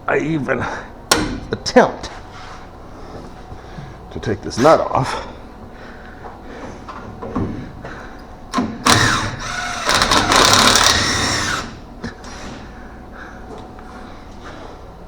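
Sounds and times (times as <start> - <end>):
power tool spinning: 8.9 - 11.8.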